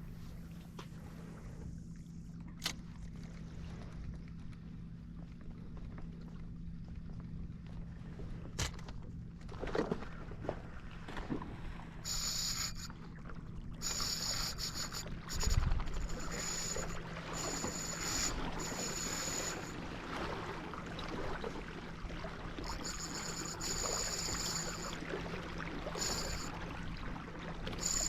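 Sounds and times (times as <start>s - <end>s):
water noise: 0.0s - 28.0s
high-pitched buzzing: 12.1s - 12.9s, 13.8s - 19.8s, 22.6s - 26.6s, 27.6s - 28.0s.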